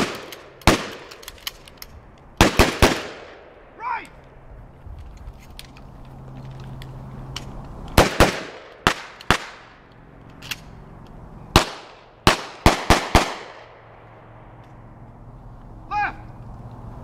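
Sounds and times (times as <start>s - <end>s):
shotgun shots: 0.0s - 1.2s, 2.4s - 3.5s, 8.0s - 9.7s, 11.6s - 13.8s.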